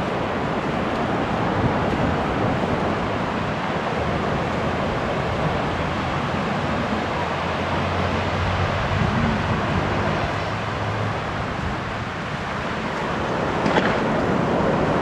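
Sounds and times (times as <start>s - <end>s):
low engine hum: 0.0s - 11.7s
ocean surf: 0.0s - 15.0s
wind: 0.0s - 15.0s.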